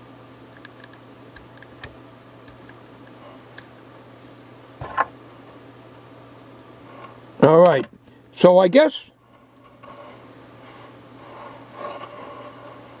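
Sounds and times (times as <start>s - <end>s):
faint steady hum: 0.0s - 13.0s
scrape and knock: 9.4s - 13.0s.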